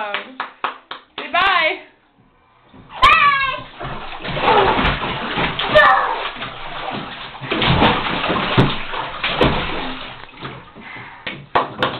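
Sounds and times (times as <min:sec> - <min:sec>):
water splashing in bathtub: 0:02.7 - 0:11.9.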